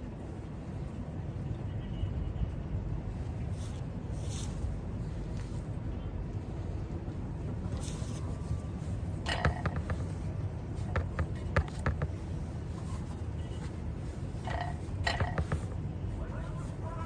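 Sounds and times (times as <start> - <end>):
small clicks and taps: 9.3 - 13.7, 14.4 - 15.8.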